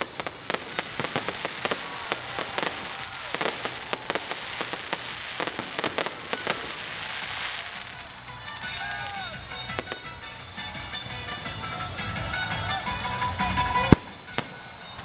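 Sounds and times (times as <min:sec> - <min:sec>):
crackling hiss: 0:00.0 - 0:09.1
fireworks pops and bangs: 0:00.0 - 0:11.6, 0:13.4 - 0:15.0.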